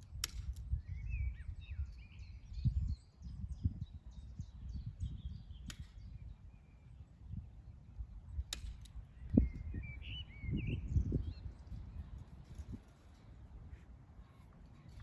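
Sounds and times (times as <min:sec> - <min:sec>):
small birds chirping: 0:00.2 - 0:15.0.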